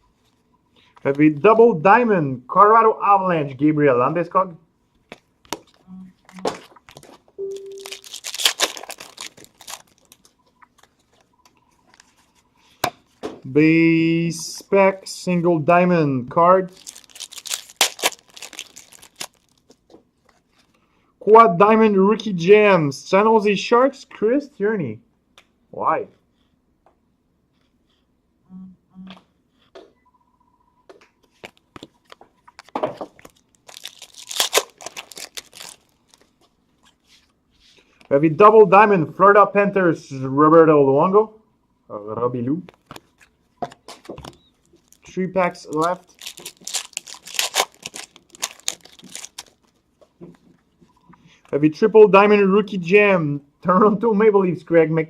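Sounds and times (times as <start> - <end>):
wrapper tearing and crinkling: 7.5 - 10.9, 16.7 - 19.8, 32.6 - 36.4, 44.5 - 49.8.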